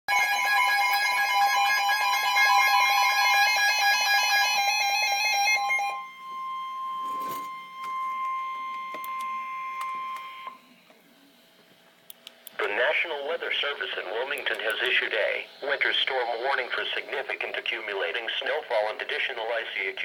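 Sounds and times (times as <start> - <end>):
rapidly pulsing electronic alarm: 0.1 - 10.6, 14.9 - 18.6
steady high alert tone: 0.1 - 10.6.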